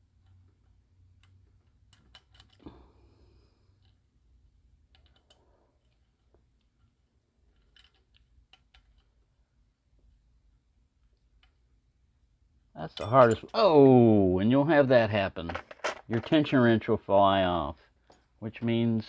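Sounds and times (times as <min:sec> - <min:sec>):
lock pick clicking on pins: 0:00.2 - 0:02.7, 0:04.8 - 0:06.0.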